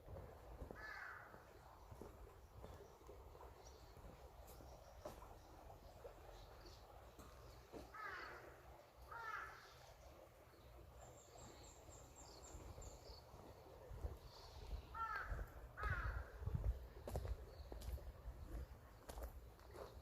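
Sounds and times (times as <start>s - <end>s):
crow cawing: 0.8s - 1.4s, 7.9s - 9.8s, 14.9s - 16.4s.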